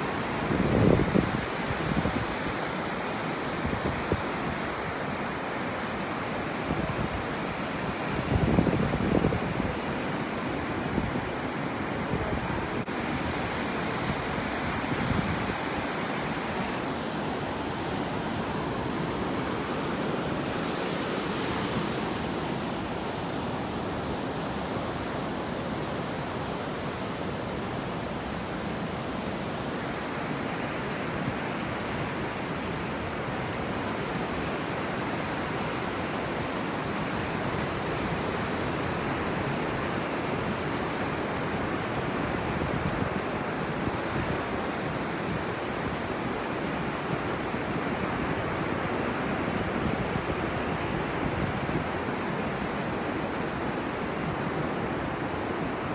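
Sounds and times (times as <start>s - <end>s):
surf washing onto a beach: 0.0s - 55.9s.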